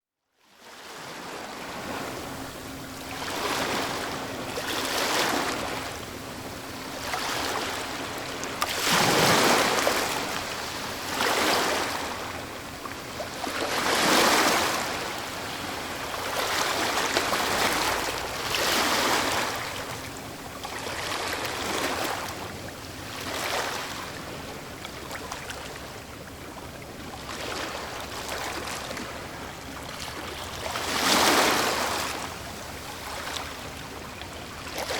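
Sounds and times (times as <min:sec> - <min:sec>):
ocean waves breaking on beach: 0:00.6 - 0:34.9.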